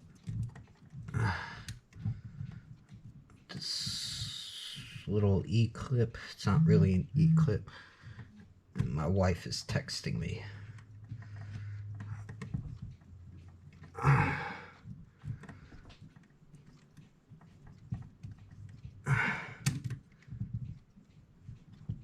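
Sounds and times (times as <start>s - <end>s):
small clock parts clicking: 8.1s - 22.0s.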